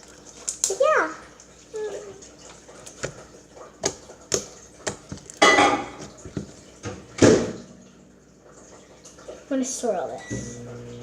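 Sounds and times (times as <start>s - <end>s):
bowls and utensils clinking: 3.8s - 6.6s.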